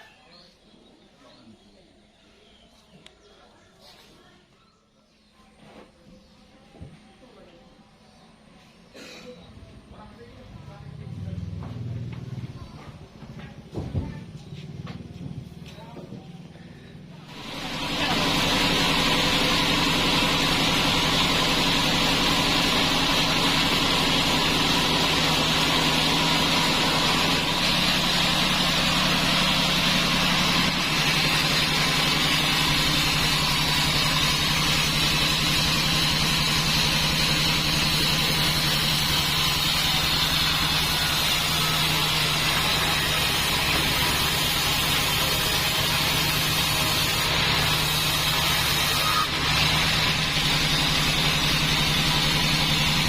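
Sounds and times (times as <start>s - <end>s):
sawmill machine drone: 17.2s - 53.0s
high saw whine: 17.3s - 53.0s.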